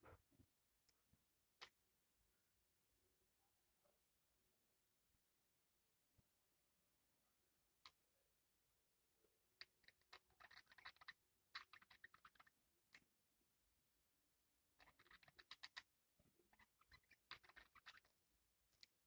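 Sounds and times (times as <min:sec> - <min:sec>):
bird beak nibbling and clicking: 0:09.6 - 0:13.1, 0:14.8 - 0:18.1, 0:18.7 - 0:19.0.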